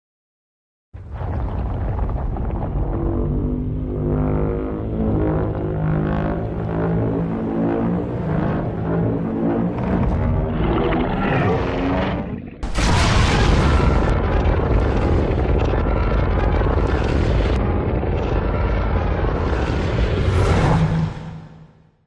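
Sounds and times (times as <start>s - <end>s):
monster roar blast: 8.2s - 21.6s.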